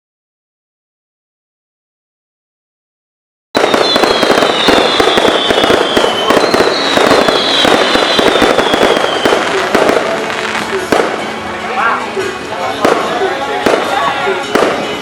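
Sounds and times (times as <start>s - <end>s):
firework whistle sliding down: 3.6s - 10.6s
fireworks popping and crackling: 3.6s - 15.0s.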